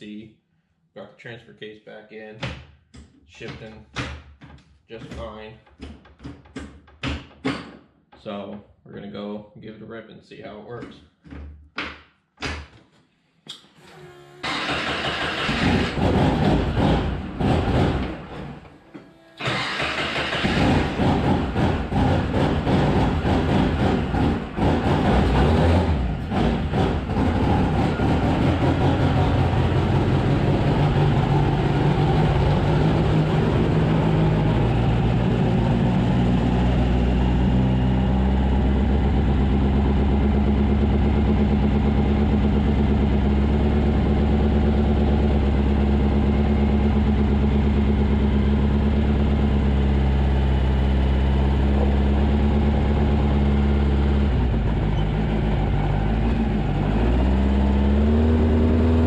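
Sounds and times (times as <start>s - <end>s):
buggy engine running under load: 14.4s - 18.7s, 19.4s - 59.0s.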